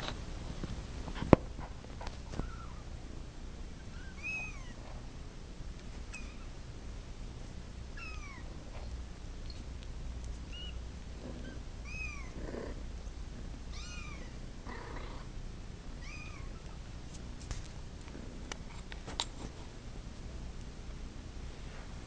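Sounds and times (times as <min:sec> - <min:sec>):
low steady hum: 0:00.0 - 0:22.0
soft rustles: 0:16.5 - 0:19.9, 0:21.4 - 0:22.0.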